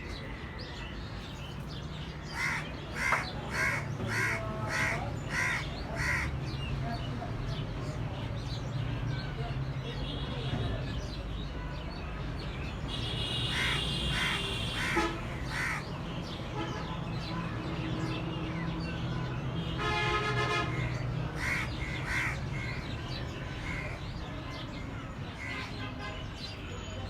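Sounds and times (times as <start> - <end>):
birds calling: 0.0 - 6.8, 12.8 - 27.0.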